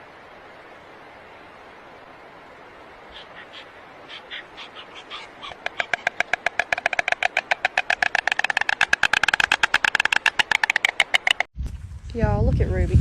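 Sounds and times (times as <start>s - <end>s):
animal high-pitched calls: 3.1s - 11.5s.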